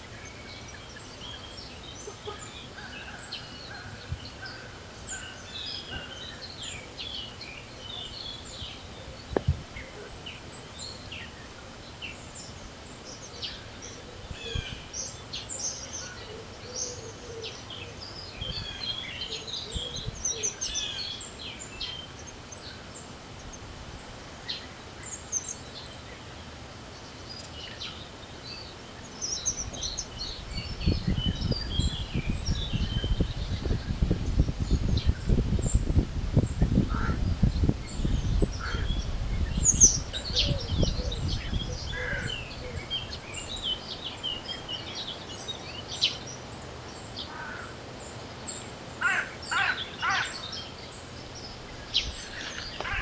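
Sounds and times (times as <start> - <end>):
outdoor background noise: 0.0 - 53.0
wind buffeting microphone: 8.1 - 9.9, 18.4 - 18.9, 19.7 - 20.4, 29.5 - 44.0, 51.6 - 53.0
songbirds chirping and singing: 27.0 - 53.0.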